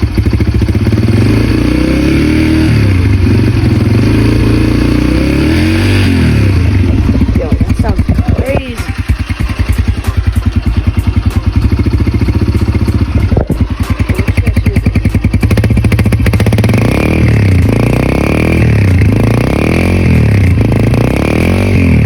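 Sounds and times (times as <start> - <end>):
motorcycle engine idling and revving: 0.0 - 22.0.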